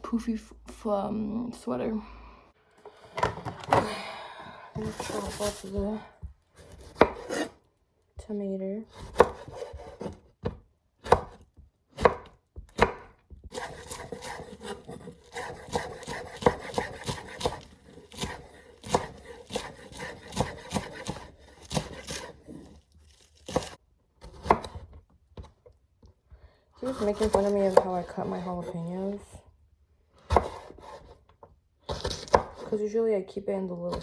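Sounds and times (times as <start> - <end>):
knife chopping on cutting board: 6.6 - 7.6, 8.9 - 24.9, 26.8 - 28.7, 30.3 - 31.2, 31.9 - 32.7.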